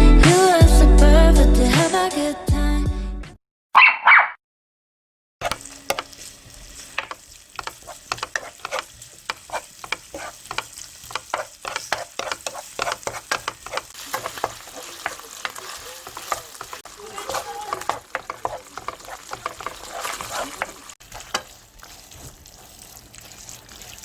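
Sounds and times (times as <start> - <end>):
food sizzling in a pan: 5.4 - 24.0.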